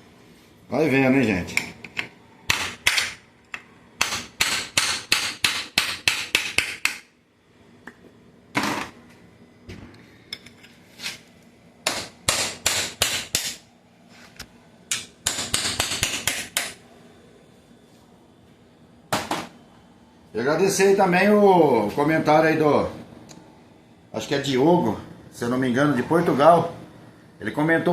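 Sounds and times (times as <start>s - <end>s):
hammer striking metal: 4.0s - 7.0s, 11.8s - 13.6s.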